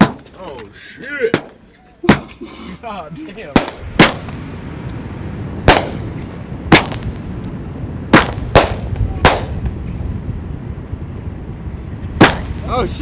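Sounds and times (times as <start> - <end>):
steady low rumble: 3.0 - 13.0
fireworks bangs: 3.5 - 9.9, 12.2 - 13.0.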